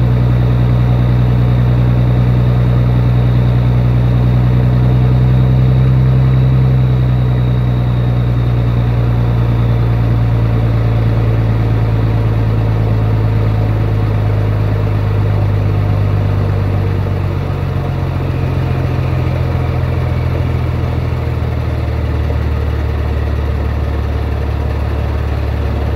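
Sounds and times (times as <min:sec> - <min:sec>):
diesel truck engine idling: 0:00.0 - 0:25.9.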